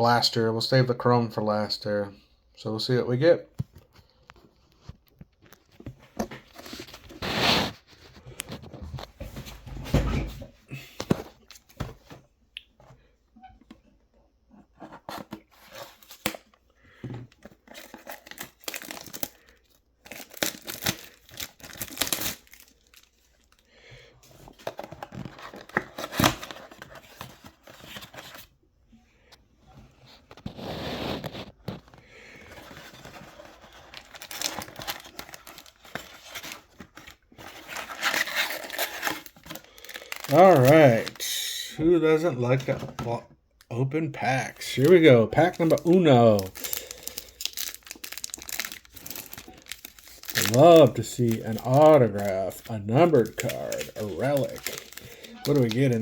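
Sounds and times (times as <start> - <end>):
plastic and cardboard tearing: 17.4 - 19.5, 20.1 - 23.2, 24.5 - 28.4, 30.4 - 41.2, 44.6 - 56.0.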